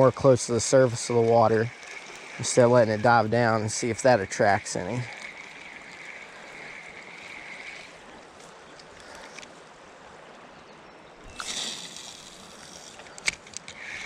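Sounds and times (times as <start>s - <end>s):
river water rushing: 0.0s - 10.3s.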